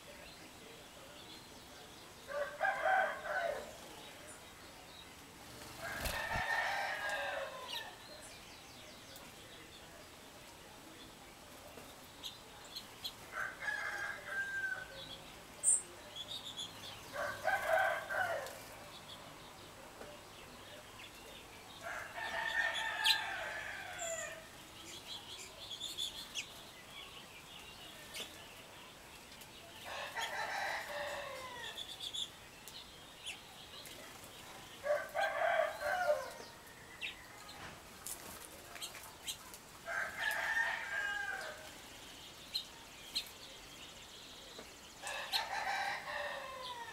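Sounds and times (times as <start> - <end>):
songbirds chirping faintly: 0.0 - 46.9
rooster crowing: 2.3 - 3.7, 29.9 - 31.8, 34.8 - 36.4, 39.9 - 41.6, 45.1 - 46.9.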